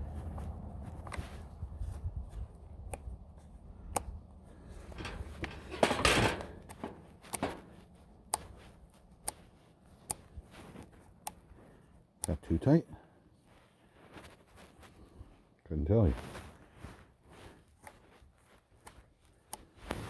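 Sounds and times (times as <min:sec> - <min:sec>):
chain and bar scraping: 0:04.6 - 0:08.0.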